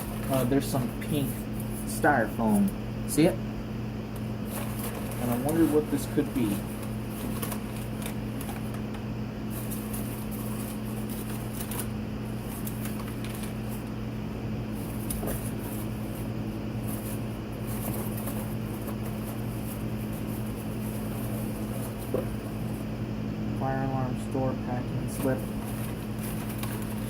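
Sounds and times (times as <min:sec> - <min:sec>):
packing material rustling: 0:00.0 - 0:02.8, 0:04.2 - 0:13.9, 0:14.6 - 0:22.9, 0:25.0 - 0:27.0
low appliance hum: 0:00.0 - 0:27.0
small crackles: 0:04.1 - 0:14.0, 0:25.2 - 0:27.0.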